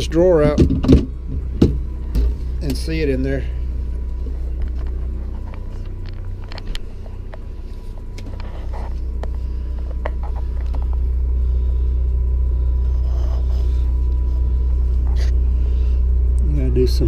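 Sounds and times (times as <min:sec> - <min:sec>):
generator low drone: 0:00.0 - 0:17.0
handling clicks and knocks: 0:00.4 - 0:02.8.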